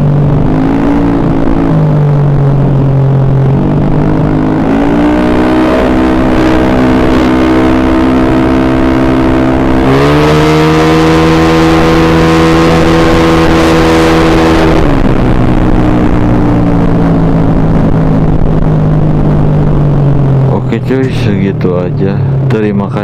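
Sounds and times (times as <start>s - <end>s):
scooter engine revving: 0.0s - 18.3s.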